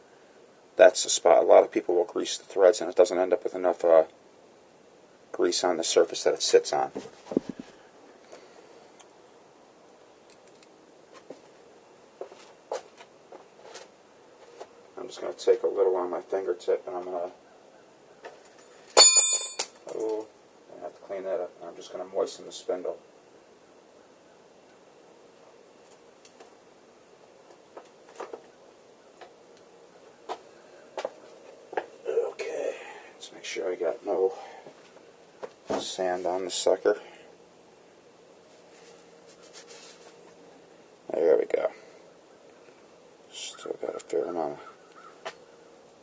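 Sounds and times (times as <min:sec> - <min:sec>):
soft clicks and taps of metal parts: 0:10.2 - 0:11.4
small parts clicking and tapping: 0:10.3 - 0:10.7.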